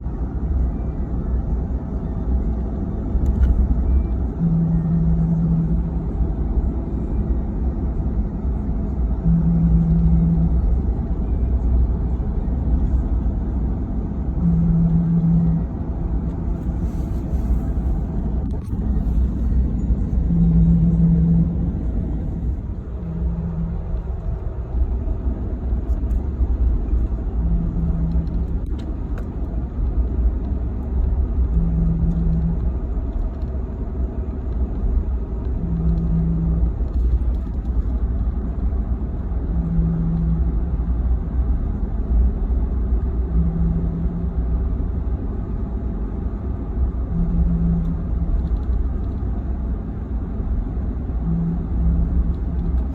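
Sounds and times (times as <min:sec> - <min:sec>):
road and drivetrain rumble: 0:00.0 - 0:52.9
brief tone: 0:00.5 - 0:25.2, 0:26.1 - 0:28.7, 0:31.4 - 0:32.9, 0:35.4 - 0:37.5, 0:39.3 - 0:44.8, 0:47.0 - 0:49.2, 0:50.9 - 0:52.9.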